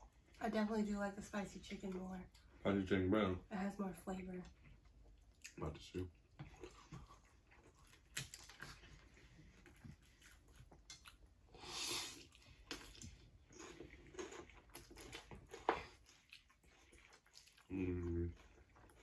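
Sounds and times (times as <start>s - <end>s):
chewing and crunching: 4.4s - 19.0s.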